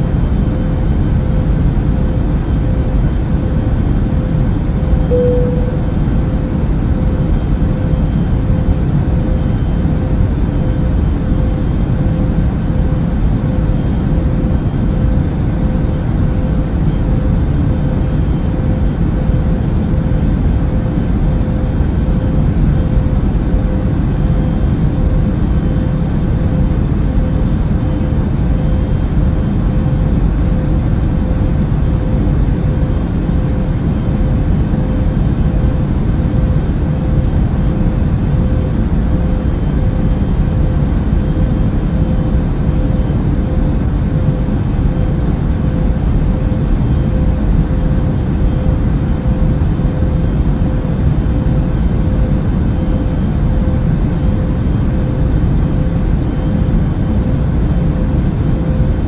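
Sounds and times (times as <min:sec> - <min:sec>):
airplane cabin engine rumble: 0:00.0 - 0:59.0
faint hum: 0:00.0 - 0:59.0.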